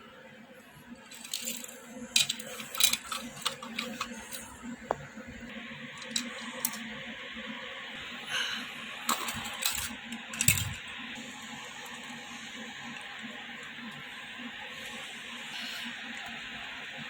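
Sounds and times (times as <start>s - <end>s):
toy train motor humming: 0.8s - 17.0s
toy train clicks and rattles: 1.0s - 5.0s, 5.9s - 7.0s, 9.1s - 15.1s.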